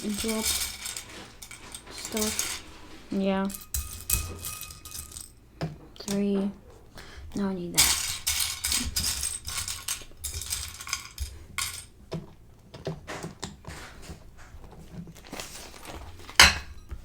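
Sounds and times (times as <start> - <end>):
plastic bricks clicking and clattering: 0.0 - 5.3, 7.8 - 13.7.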